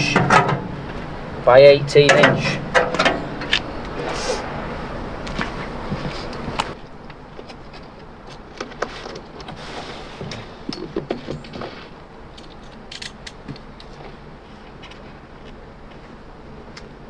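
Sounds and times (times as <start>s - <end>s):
rustling scrapes: 3.6s - 6.8s, 7.5s - 10.6s, 11.3s - 12.0s.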